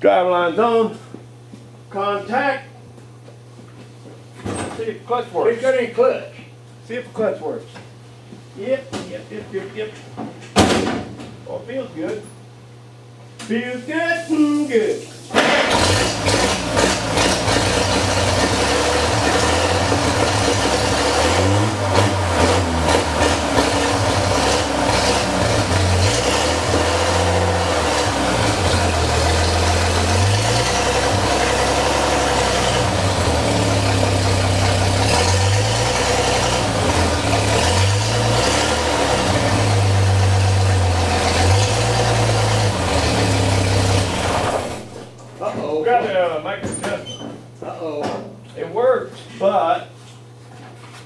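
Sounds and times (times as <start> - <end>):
truck engine running: 15.4 - 45.2.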